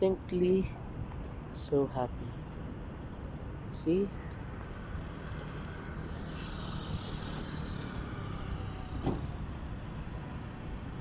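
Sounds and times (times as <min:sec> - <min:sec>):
vehicle running past: 0:04.6 - 0:11.0.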